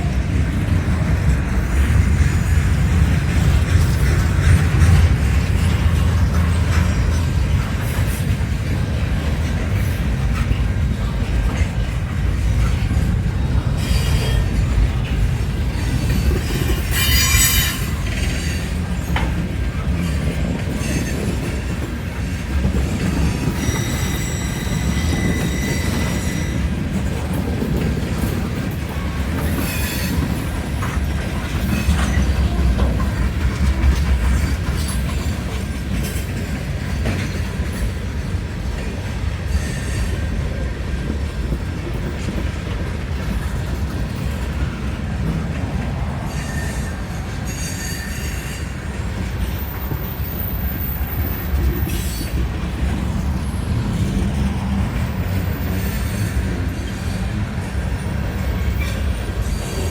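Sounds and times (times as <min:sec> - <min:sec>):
rail joint clicks: 0:00.0 - 0:59.9
train wheels rumbling on track: 0:00.0 - 0:59.9
wheel squeals: 0:15.8 - 0:19.4, 0:22.7 - 0:27.0, 0:28.4 - 0:37.8, 0:46.2 - 0:54.2, 0:55.1 - 0:57.4.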